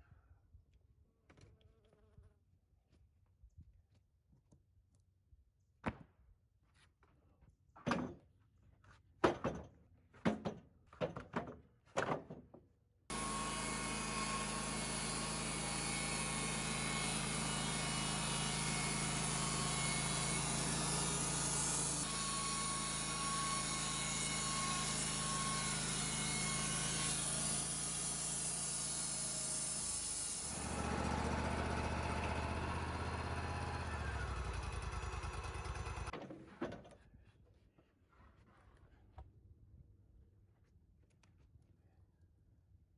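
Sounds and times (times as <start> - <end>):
hollow wooden thunks: 9.2 - 12.6
sawmill engine running: 13.1 - 36.1.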